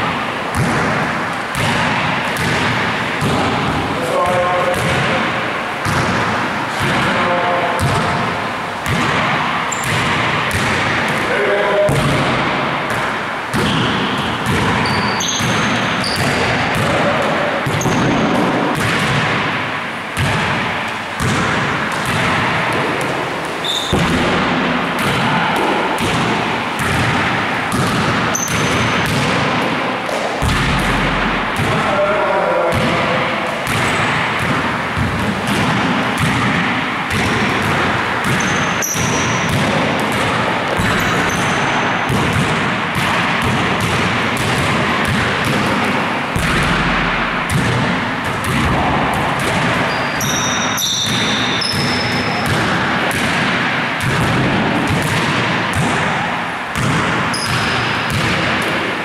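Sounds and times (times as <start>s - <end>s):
basketballs bouncing on hard floor: 0.0s - 58.9s
shoe squeaks: 9.7s - 9.9s, 14.8s - 16.4s, 17.8s - 18.2s, 23.6s - 24.0s, 28.3s - 29.0s, 38.3s - 39.5s, 41.0s - 41.8s, 49.8s - 52.4s, 57.3s - 57.8s.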